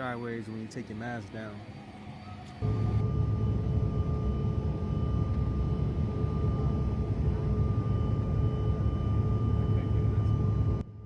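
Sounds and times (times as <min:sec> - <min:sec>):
faint hum tones: 0:00.0 - 0:11.0
low rumbling drone: 0:02.6 - 0:11.0.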